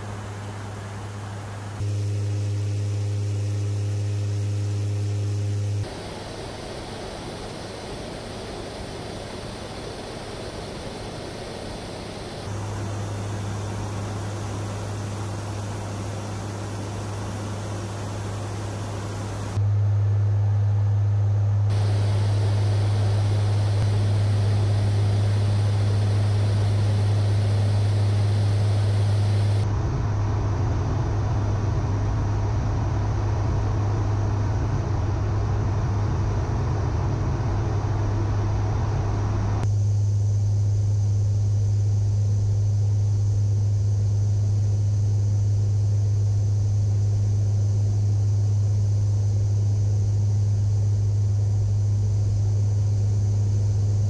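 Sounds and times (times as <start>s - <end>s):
propeller drone inside aircraft: 0.0s - 54.0s
airflow hiss: 5.8s - 19.6s, 21.7s - 29.6s.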